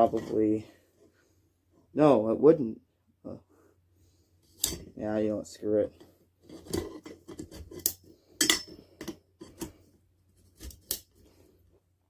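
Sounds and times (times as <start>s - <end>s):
metal poles clinking and scraping: 6.0s - 9.8s.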